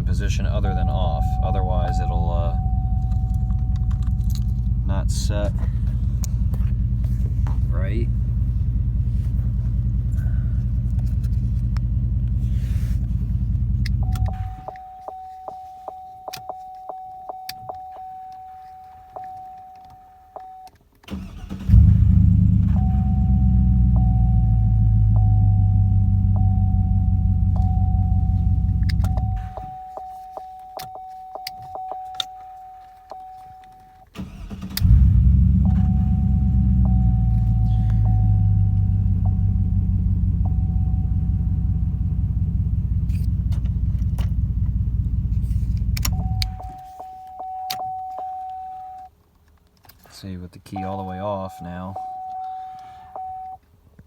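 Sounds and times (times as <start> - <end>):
truck engine idling: 0.0 - 19.2, 21.1 - 47.8
warning chime with ticks: 0.6 - 4.2, 14.0 - 20.7, 22.8 - 33.8, 50.8 - 53.6
key clicks in ignition: 1.3 - 4.8, 13.6 - 21.8, 25.2 - 35.0, 45.4 - 50.0, 51.6 - 53.6.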